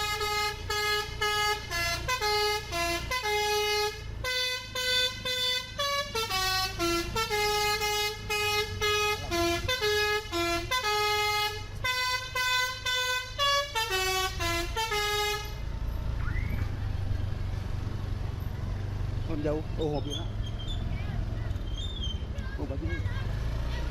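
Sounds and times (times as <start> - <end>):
bus multi-tone horn melody: 0.0 - 15.9.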